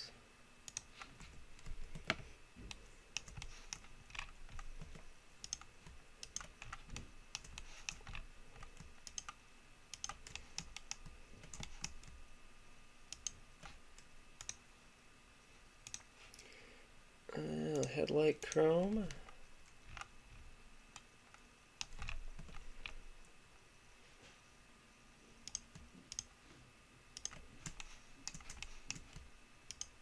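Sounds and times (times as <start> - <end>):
keyboard and mouse clicking: 0.7 - 12.2, 13.1 - 14.6, 15.8 - 16.1, 17.8 - 23.0, 25.4 - 26.3, 27.2 - 30.0.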